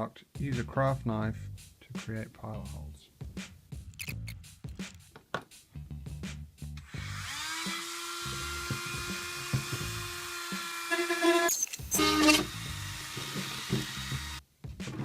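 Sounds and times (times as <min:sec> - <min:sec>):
background music with a beat: 0:01.5 - 0:06.8, 0:14.4 - 0:15.0
power drill whining: 0:06.9 - 0:14.4.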